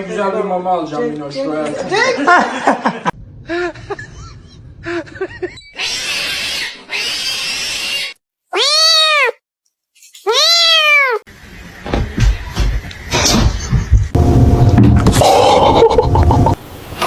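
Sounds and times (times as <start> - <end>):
cat meowing: 6.9 - 9.4, 10.2 - 11.2.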